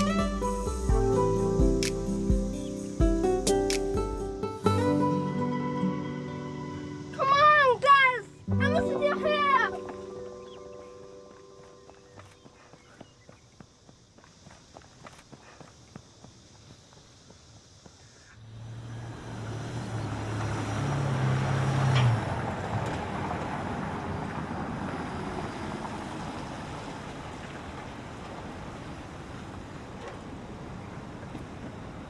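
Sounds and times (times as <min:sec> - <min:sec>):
car driving by: 0:18.4 - 0:32.0.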